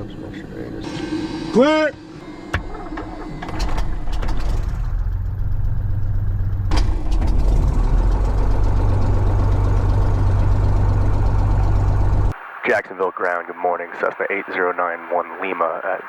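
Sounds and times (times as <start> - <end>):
aircraft engine starting and idling: 0.0 - 12.3.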